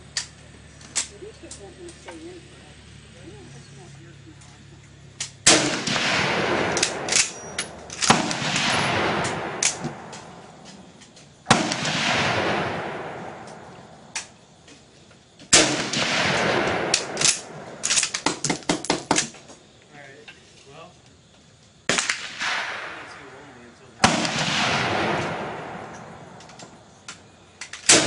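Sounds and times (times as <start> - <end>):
faint sharp cracks: 5.2 - 14.8
rifle shots with echo: 5.3 - 10.7, 11.4 - 14.4, 15.5 - 19.3, 21.9 - 26.8, 27.8 - 28.0.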